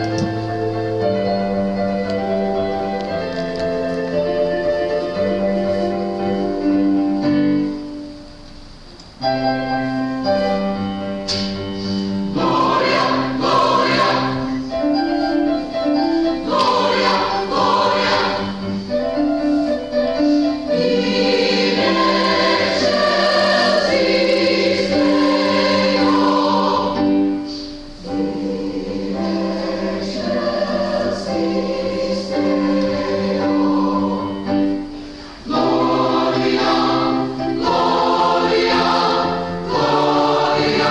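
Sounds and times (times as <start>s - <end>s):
organ accompaniment: 0.0s - 40.9s
choir singing a hymn: 11.7s - 40.9s.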